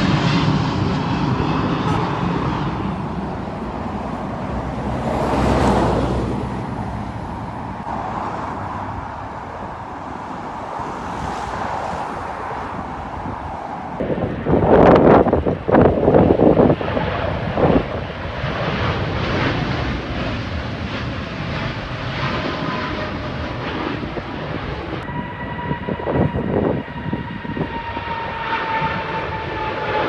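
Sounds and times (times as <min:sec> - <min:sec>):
vehicle passing: 0:00.0 - 0:15.8
city street traffic: 0:00.0 - 0:30.0.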